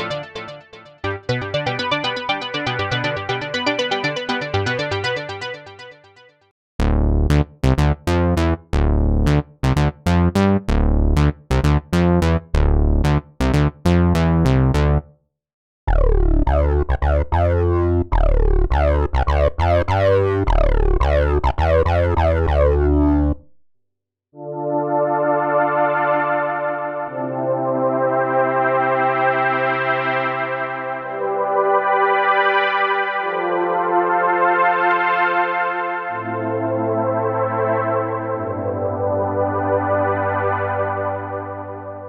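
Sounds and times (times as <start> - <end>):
punchy synth bass notes: 0.0 - 5.9, 6.8 - 15.1, 15.9 - 23.5
synth notes with downward sweep: 0.0 - 6.0, 15.9 - 23.4.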